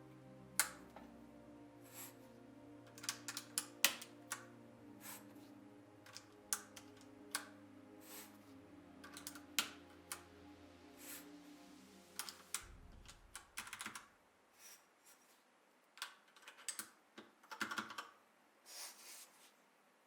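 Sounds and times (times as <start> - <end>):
faint background music: 0.0 - 20.0
keycaps clicking onto keyboard: 2.9 - 4.4, 12.2 - 14.1, 16.0 - 18.1.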